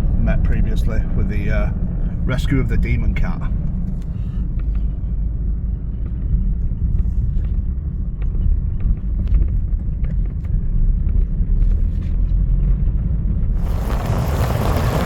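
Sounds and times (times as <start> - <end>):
car cabin rumble: 0.0 - 15.0.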